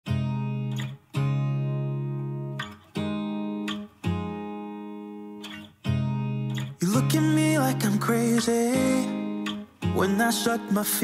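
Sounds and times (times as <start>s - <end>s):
acoustic guitar strumming chords: 0.1s - 11.0s.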